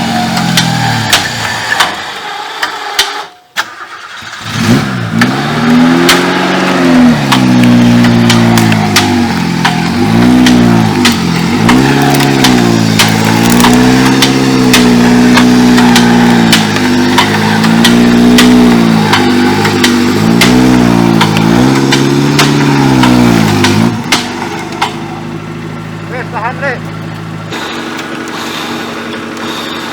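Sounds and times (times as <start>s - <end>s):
car engine labouring: 0.0s - 29.9s
sharp clicks and knocks: 7.2s - 25.1s.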